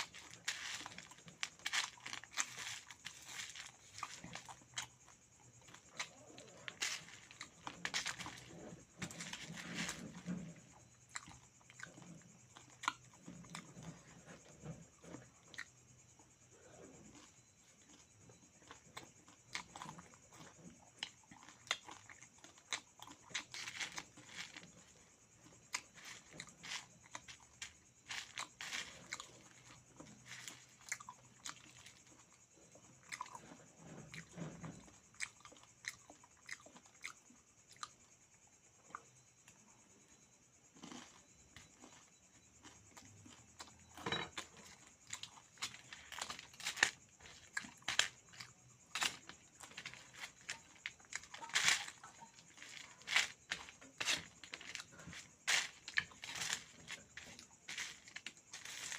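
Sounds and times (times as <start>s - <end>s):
person chewing crunchy food: 0.0s - 38.0s, 40.4s - 58.9s.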